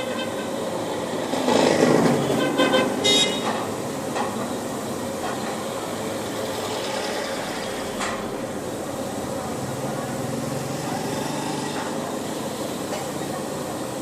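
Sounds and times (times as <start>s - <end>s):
car horn toot: 0.0s - 0.6s, 2.2s - 3.6s
steady traffic din: 0.0s - 14.0s.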